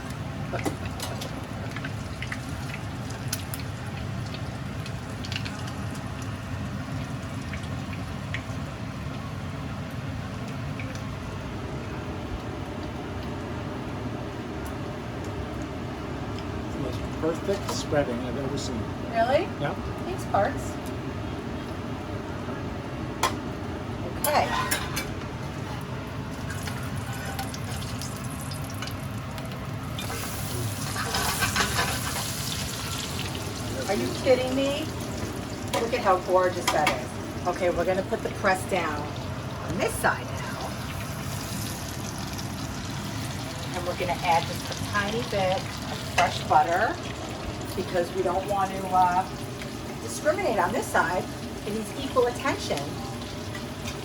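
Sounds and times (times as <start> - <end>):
oil popping and crackling: 0.0 - 9.2, 9.9 - 13.4, 25.6 - 54.0
exhaust fan hum: 0.0 - 54.0
sandwich sizzling in a pan: 25.9 - 54.0.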